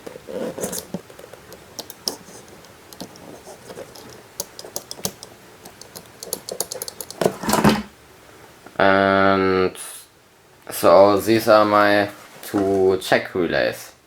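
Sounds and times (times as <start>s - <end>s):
small irregular clicks and taps: 0.6s - 7.3s.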